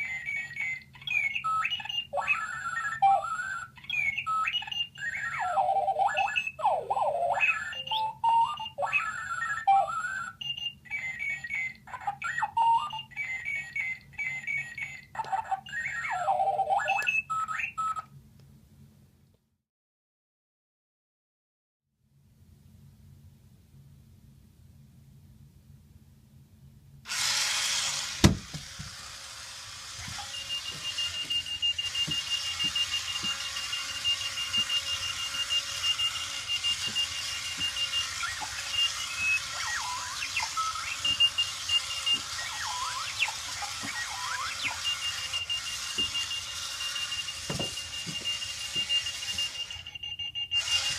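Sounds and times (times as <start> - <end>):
alarm clock beeping: 0.0 - 18.0, 29.9 - 50.9.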